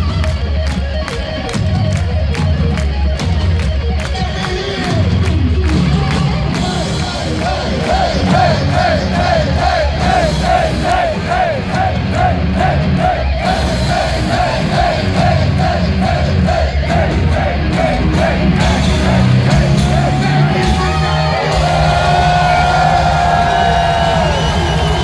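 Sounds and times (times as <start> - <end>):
heavy metal band playing: 0.0 - 25.0
crowd yelling: 5.7 - 25.0.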